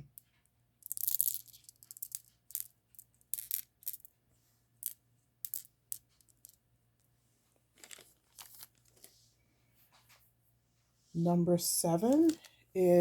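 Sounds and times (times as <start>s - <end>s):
stone beads clicking together: 0.0s - 4.1s, 4.8s - 6.6s.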